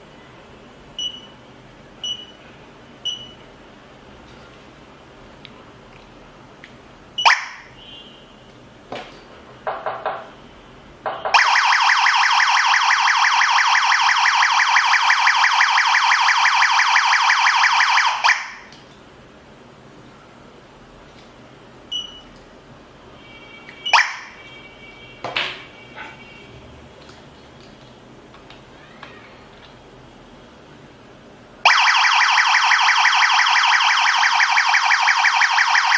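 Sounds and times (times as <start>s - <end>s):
alarm siren pulsing: 11.4s - 18.7s, 23.9s - 24.4s, 31.7s - 35.9s.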